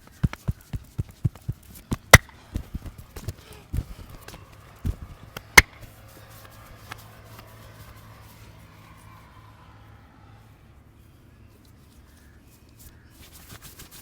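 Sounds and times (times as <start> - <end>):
hand slaps and chops on body: 0.2 - 5.9.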